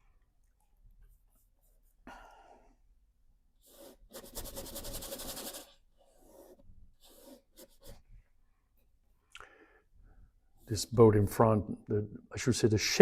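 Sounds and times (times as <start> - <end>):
paint brush scrubbing: 3.6 - 8.0.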